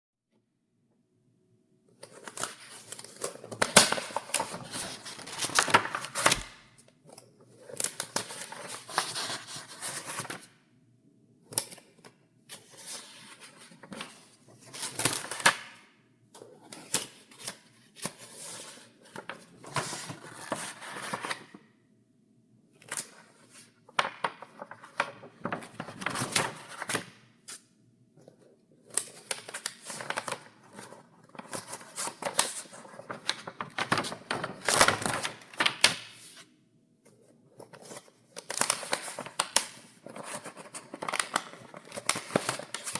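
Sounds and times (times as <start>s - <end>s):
paper pages turning: 2.0s - 6.8s, 7.6s - 10.5s, 23.0s - 27.1s, 29.0s - 36.4s, 37.6s - 42.9s.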